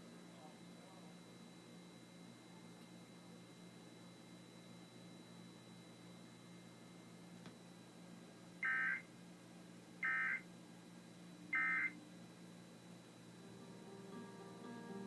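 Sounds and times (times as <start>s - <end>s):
electronic data warbles: 11.6s - 11.9s.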